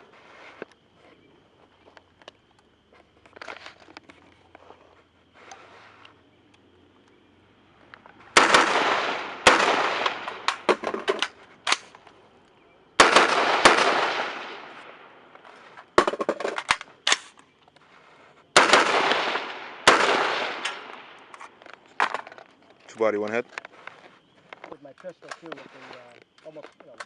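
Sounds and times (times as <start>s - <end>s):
faint sharp cracks: 7.8s - 27.0s
rifle shots with long echo: 8.3s - 11.9s, 12.9s - 15.3s, 18.5s - 22.2s.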